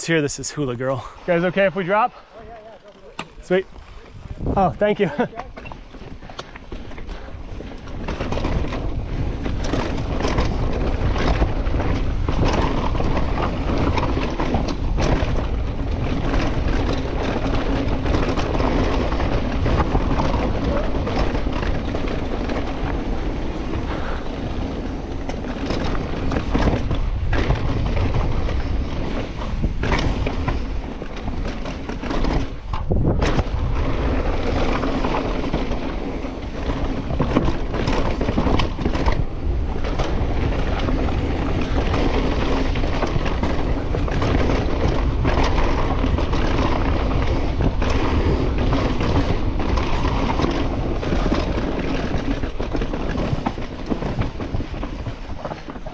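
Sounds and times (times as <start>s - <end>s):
bike knocking and rattling: 0.0s - 55.9s
bike tyres on dirt: 0.0s - 55.9s.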